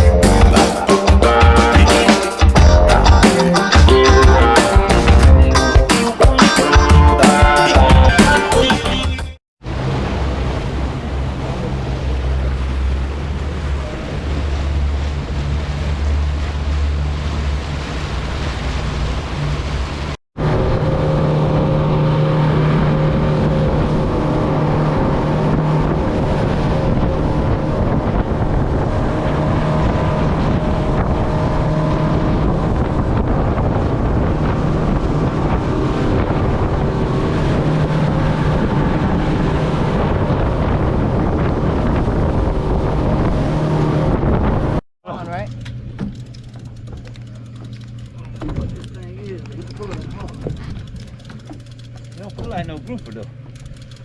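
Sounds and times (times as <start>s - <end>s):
motorboat engine running: 0.0s - 54.0s
water noise: 0.0s - 54.0s
wind on microphone: 9.7s - 44.8s, 48.1s - 53.1s.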